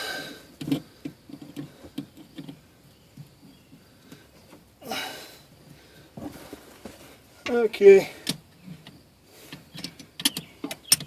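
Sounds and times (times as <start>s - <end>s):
short rustling: 5.7s - 7.6s.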